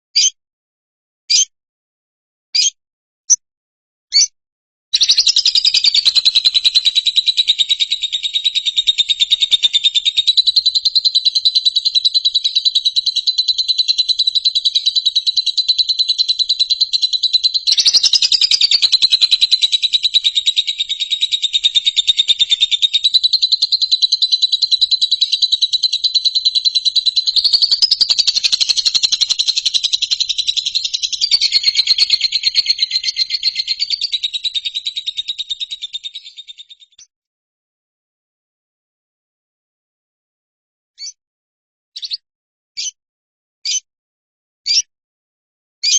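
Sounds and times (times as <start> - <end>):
fast pulsing high trill: 27.2 - 32.5.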